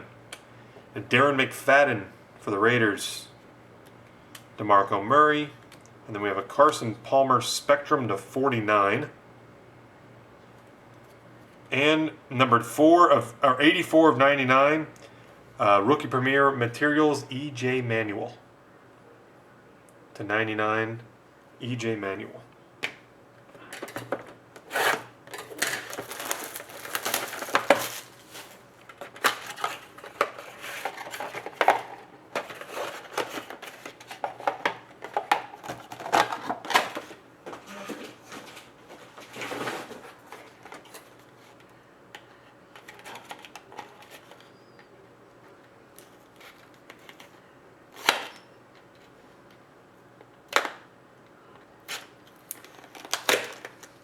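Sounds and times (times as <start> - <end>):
plastic packaging rustling: 23.6 - 41.6.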